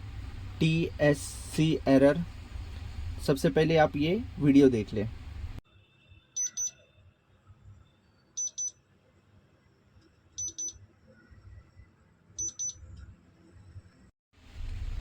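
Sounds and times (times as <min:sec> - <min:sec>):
washing machine short high beeps: 0:06.4 - 0:06.8, 0:08.4 - 0:08.8, 0:10.4 - 0:10.8, 0:12.4 - 0:12.8.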